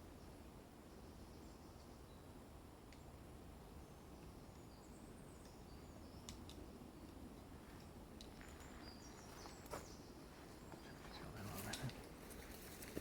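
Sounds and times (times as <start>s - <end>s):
distant bird chirps: 3.0s - 12.0s
faint clicks: 6.2s - 7.2s.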